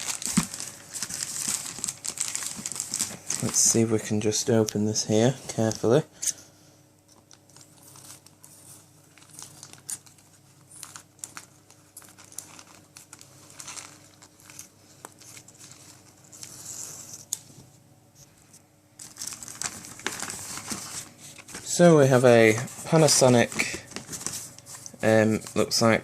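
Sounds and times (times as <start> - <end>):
packet tearing: 0.0 - 3.8, 9.1 - 17.0, 19.0 - 21.0
wrapping crinkling and rustling: 0.0 - 6.0, 7.1 - 17.5, 19.0 - 26.0.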